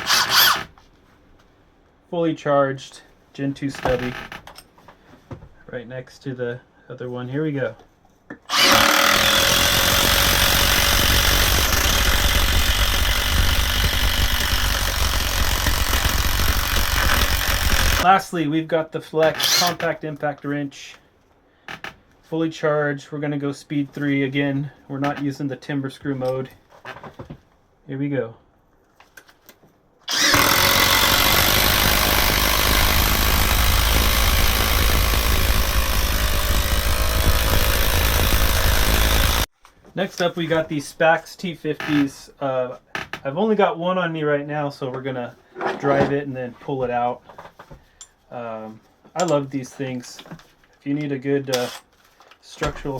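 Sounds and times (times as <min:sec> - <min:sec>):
impact wrench hammering: 0:08.5 - 0:18.0, 0:30.1 - 0:39.5.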